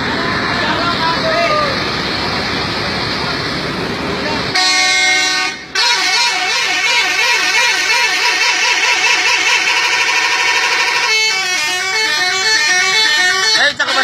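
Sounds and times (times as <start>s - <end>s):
musical air horns playing: 4.5s - 14.0s.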